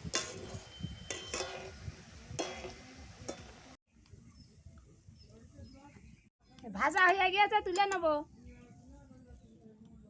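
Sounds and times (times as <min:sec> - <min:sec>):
spatula scraping a pan: 0:00.0 - 0:01.8.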